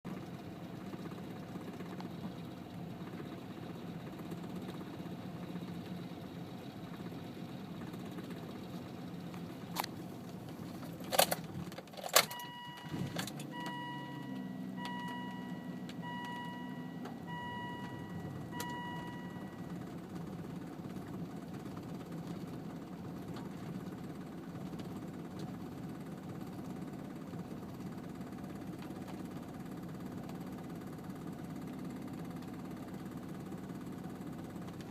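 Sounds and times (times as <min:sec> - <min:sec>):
car engine idling with rattle: 0:00.1 - 0:34.9
repeating electronic chime: 0:12.3 - 0:19.8.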